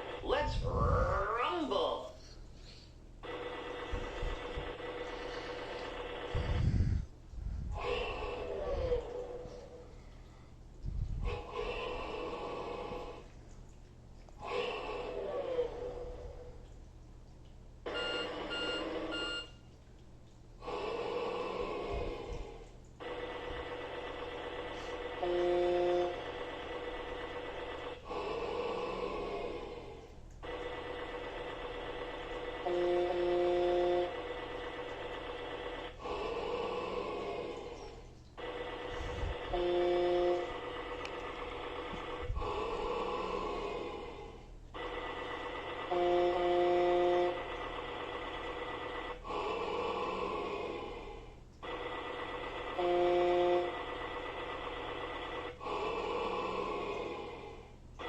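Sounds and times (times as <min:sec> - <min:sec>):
horn-like tone from toy speaker: 0:17.9 - 0:19.5, 0:24.8 - 0:26.5, 0:32.5 - 0:34.5, 0:38.9 - 0:40.8, 0:44.8 - 0:47.6, 0:51.8 - 0:54.4
short electronic beeps: 0:17.9 - 0:19.6
steady buzzing tone: 0:21.0 - 0:50.9, 0:51.6 - 0:58.0
hissy electronic noise: 0:23.0 - 0:57.7.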